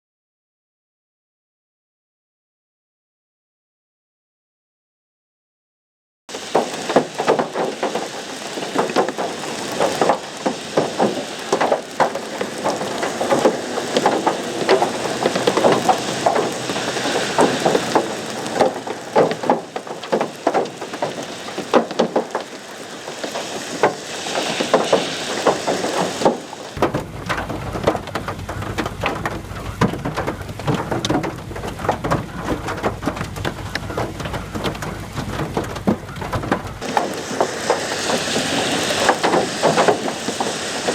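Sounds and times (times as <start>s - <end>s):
hail and heavy rain pelting: 6.3s - 40.9s.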